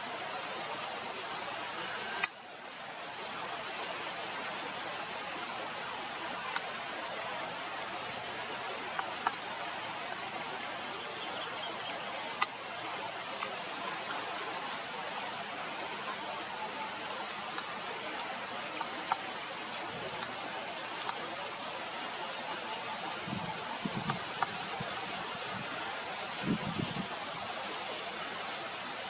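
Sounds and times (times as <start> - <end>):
outdoor hiss: 0.0 - 29.0.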